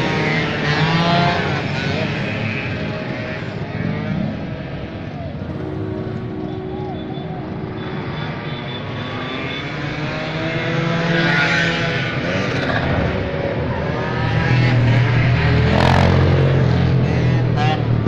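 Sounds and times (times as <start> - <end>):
two-stroke engine revving: 14.1 - 17.9.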